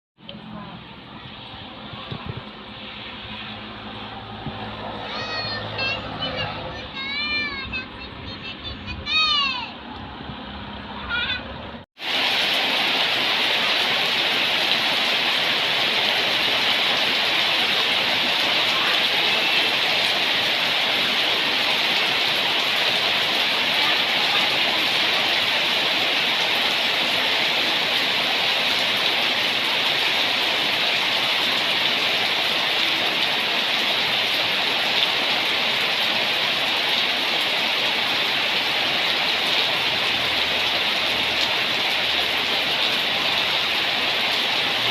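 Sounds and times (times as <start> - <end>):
heavy rain hissing: 12.0 - 44.9.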